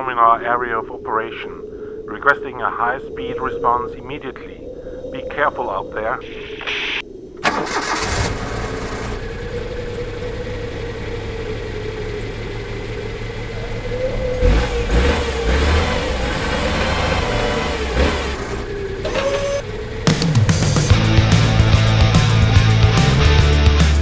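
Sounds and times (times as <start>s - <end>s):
truck engine starting and revving: 7.4s - 24.0s.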